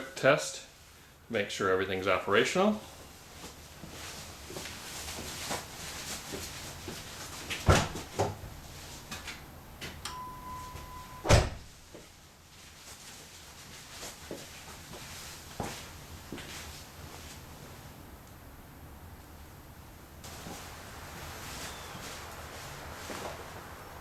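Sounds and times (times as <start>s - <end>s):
car door slam: 7.7s - 8.3s, 11.2s - 11.7s
clunks and knocks: 7.7s - 8.5s
electronic beep: 10.1s - 11.3s.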